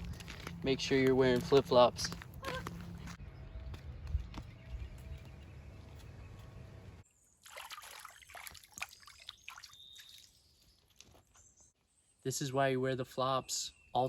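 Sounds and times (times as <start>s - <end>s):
water trickling in a stream: 7.4s - 11.1s.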